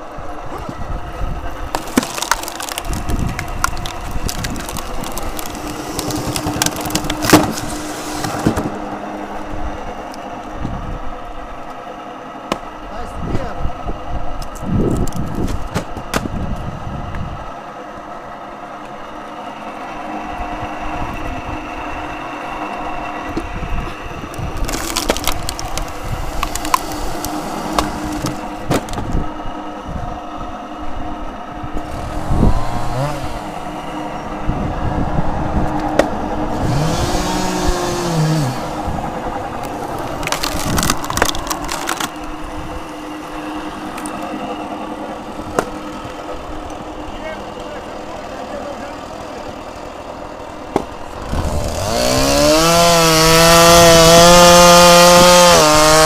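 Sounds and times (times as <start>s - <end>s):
steady engine hum: 0.0s - 56.0s
wood cracking and splintering: 1.6s - 8.8s, 14.5s - 16.3s, 24.3s - 29.2s, 35.7s - 42.4s.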